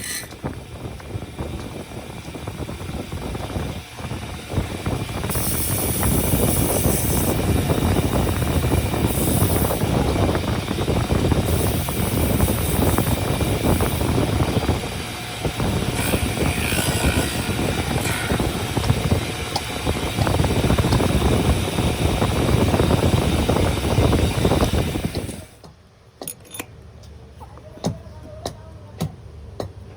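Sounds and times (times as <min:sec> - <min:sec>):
woodworking power tool running: 0:01.2 - 0:25.6.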